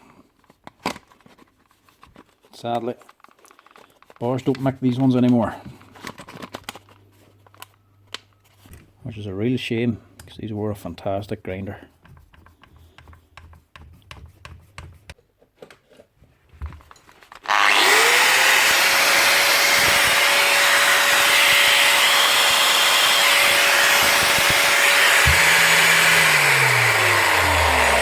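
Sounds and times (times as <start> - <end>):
angle grinder motor running: 17.5 - 28.0.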